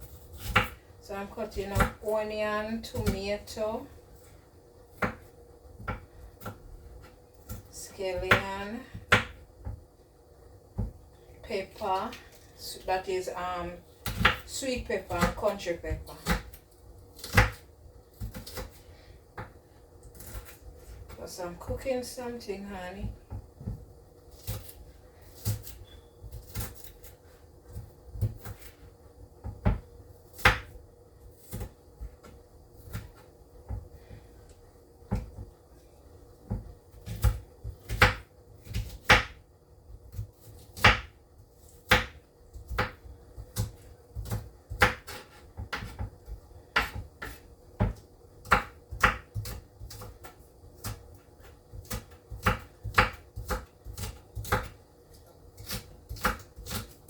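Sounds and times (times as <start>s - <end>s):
knife chopping on cutting board: 0.0s - 0.8s, 4.9s - 9.8s, 14.0s - 16.6s, 17.2s - 18.8s, 23.0s - 27.1s, 27.7s - 28.8s, 29.4s - 30.7s, 31.3s - 34.2s, 36.4s - 39.4s, 40.1s - 54.8s, 55.6s - 57.0s.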